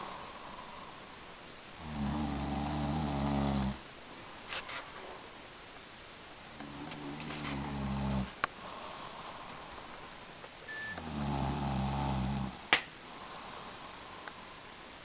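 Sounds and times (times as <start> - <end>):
man snoring: 1.8 - 3.8, 6.6 - 8.3, 11.0 - 12.7.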